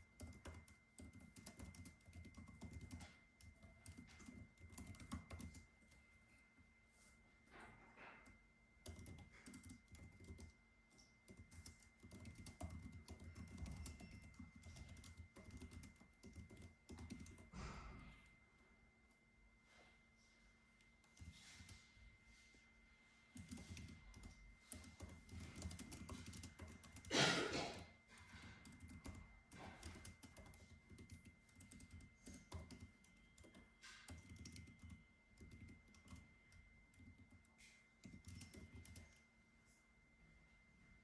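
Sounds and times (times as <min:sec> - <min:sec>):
keyboard typing: 0:00.0 - 0:06.1, 0:08.2 - 0:18.2, 0:21.0 - 0:21.9, 0:23.3 - 0:39.2.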